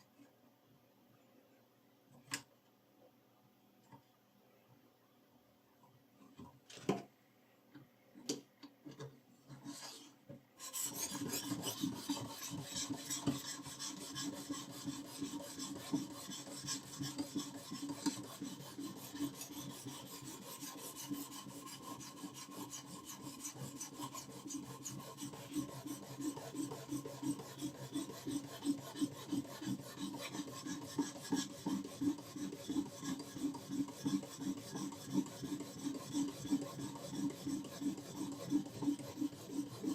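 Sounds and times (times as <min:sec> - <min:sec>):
knife rasping on sharpening stone: 0:09.6 - 0:39.9.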